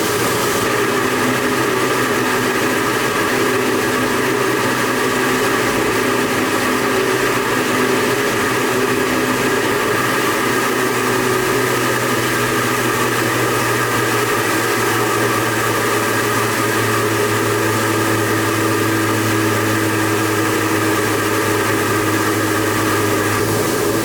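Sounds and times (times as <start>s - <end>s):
rushing water hiss: 0.0s - 2.8s, 18.9s - 24.0s
turbine humming: 0.0s - 24.0s.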